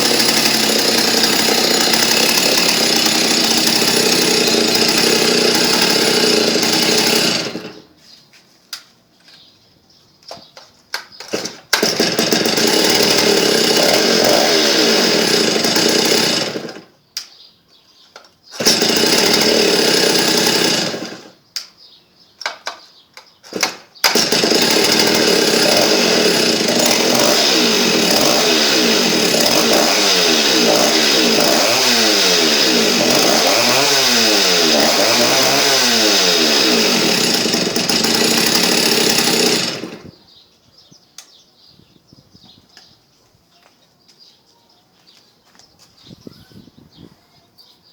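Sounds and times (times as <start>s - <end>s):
chainsaw engine revving: 0.0s - 7.9s, 11.2s - 16.9s, 18.5s - 21.4s, 23.4s - 40.2s.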